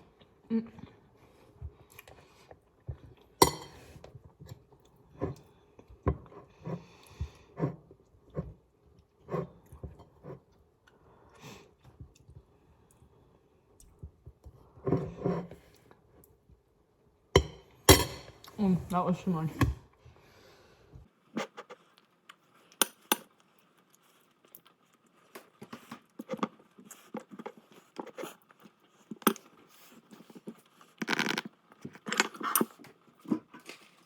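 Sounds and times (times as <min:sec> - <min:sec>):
person chewing crumbly food: 0:21.6 - 0:34.0.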